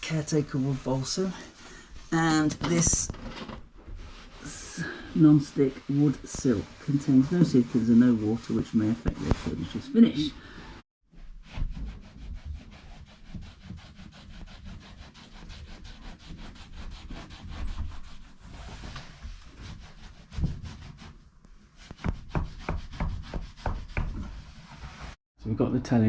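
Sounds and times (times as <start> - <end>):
cloth rubbing on wood: 3.8 - 10.2, 11.1 - 25.2.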